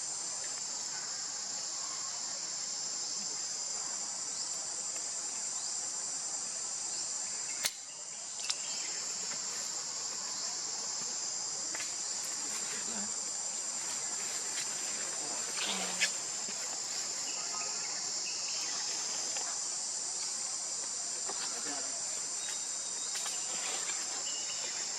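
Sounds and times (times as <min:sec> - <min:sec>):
insects trilling: 0:00.0 - 0:24.9
sharp click: 0:07.6 - 0:07.9.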